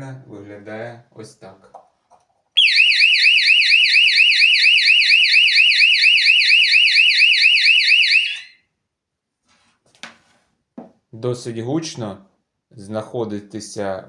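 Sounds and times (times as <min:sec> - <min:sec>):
warbling fire alarm siren: 0:02.6 - 0:08.6.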